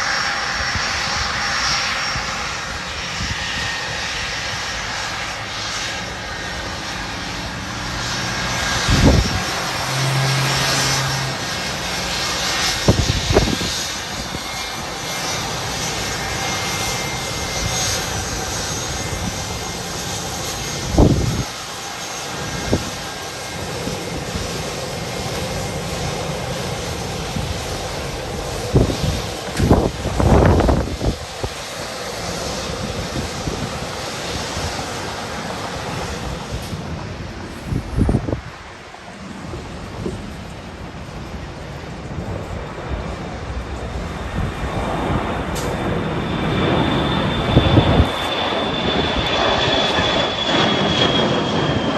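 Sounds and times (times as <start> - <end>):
airliner engines running: 0.0 - 51.9
wind buffeting microphone: 0.0 - 51.9.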